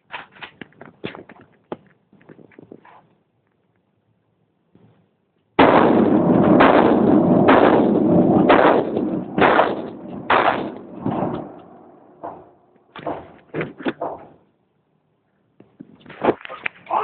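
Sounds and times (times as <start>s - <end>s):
shotgun shots: 5.6s - 13.2s.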